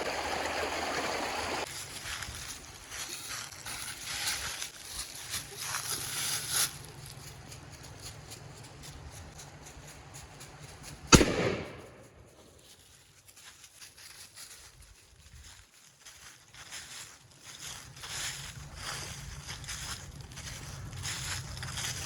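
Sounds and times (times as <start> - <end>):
rustling: 1.6 - 22.0
gunshot: 11.1 - 12.2.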